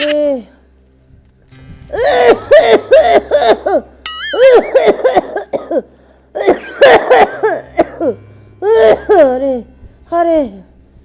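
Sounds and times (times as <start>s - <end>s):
woman hacking coughing: 2.2s - 9.4s.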